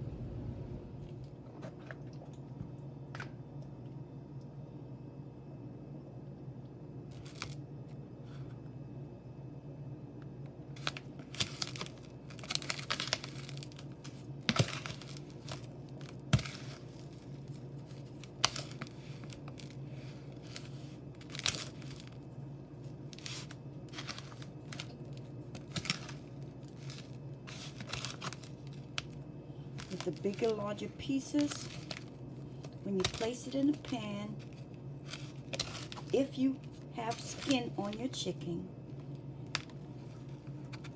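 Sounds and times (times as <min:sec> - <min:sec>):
low steady hum: 0:00.0 - 0:40.9
breadcrumbs rustling and crunching: 0:07.1 - 0:08.4, 0:10.7 - 0:38.2, 0:38.9 - 0:40.9.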